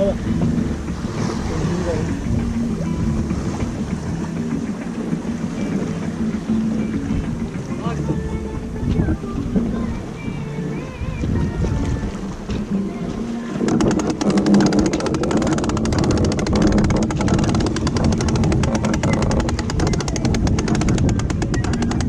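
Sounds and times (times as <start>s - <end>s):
boat noise: 0.0s - 22.0s
sea: 0.0s - 22.0s
music with quick percussive beat: 13.6s - 22.0s.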